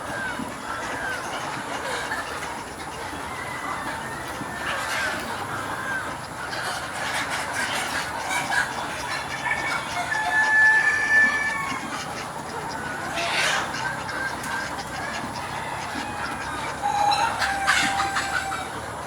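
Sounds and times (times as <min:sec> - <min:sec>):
chickens clucking: 0:00.0 - 0:19.0
drawn-out high chicken call: 0:00.0 - 0:19.0.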